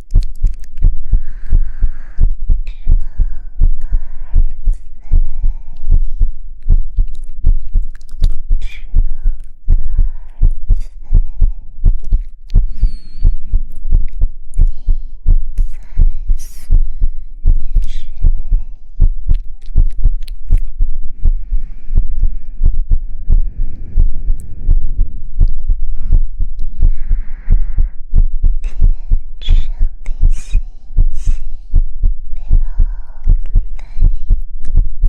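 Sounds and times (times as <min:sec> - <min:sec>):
soft deep thumps: 0:15.3 - 0:35.0.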